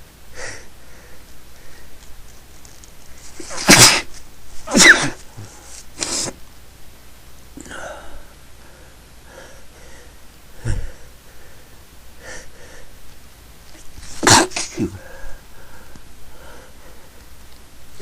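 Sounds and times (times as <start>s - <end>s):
faint breathing: 0.3s - 2.1s, 7.6s - 13.0s, 14.9s - 17.4s
person sneezing: 3.3s - 6.4s, 14.0s - 15.1s.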